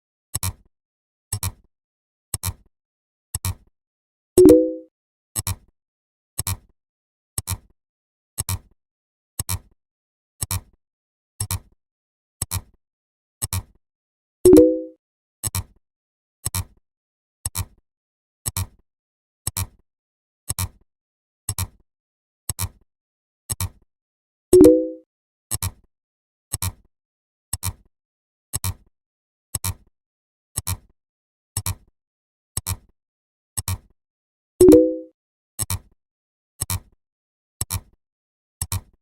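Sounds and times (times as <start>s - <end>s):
pitched beep: 4.4s - 4.9s, 14.5s - 15.0s, 24.6s - 25.0s, 34.6s - 35.1s.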